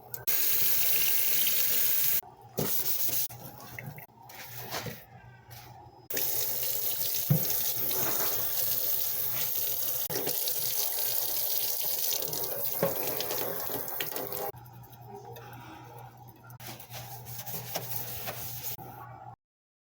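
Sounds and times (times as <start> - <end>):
tap water running into sink: 6.1 - 14.5.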